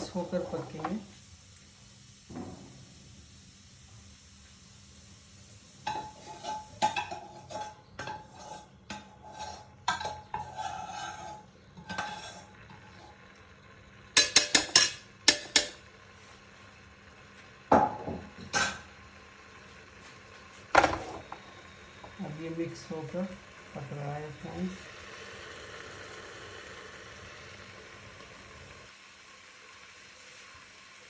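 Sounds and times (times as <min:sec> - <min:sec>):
utensil clinking against a pan: 0:05.8 - 0:12.5, 0:14.2 - 0:15.8
metal utensil stirring in a pan: 0:05.8 - 0:13.3, 0:14.1 - 0:15.8.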